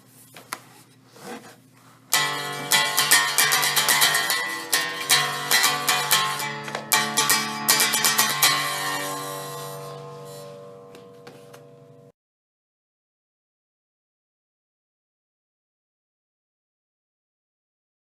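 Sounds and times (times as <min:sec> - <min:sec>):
plucked guitar notes: 0:02.1 - 0:12.1.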